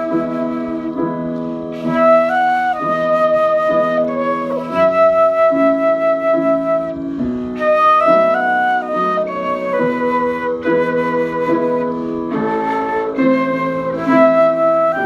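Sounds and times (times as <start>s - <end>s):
flute melody: 0.0s - 15.0s
lower accompaniment: 0.0s - 15.0s.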